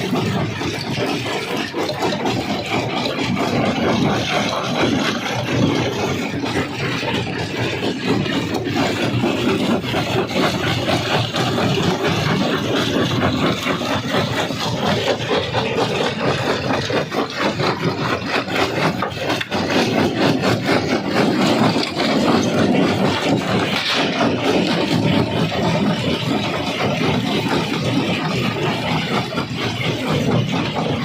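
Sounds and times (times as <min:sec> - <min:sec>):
jaw crusher crushing rock: 0:00.0 - 0:31.0.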